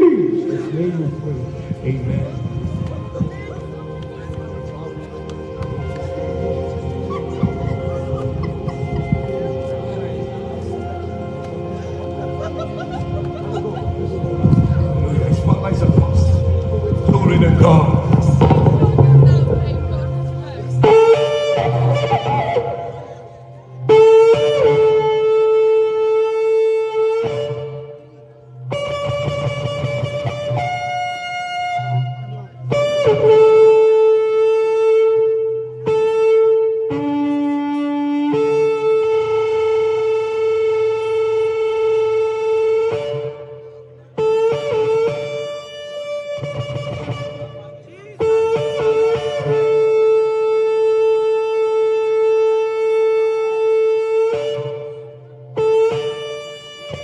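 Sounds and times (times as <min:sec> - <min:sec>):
ram's horn blowing: 0:12.8 - 0:57.0
shofar blasts: 0:19.7 - 0:28.1, 0:28.7 - 0:43.6.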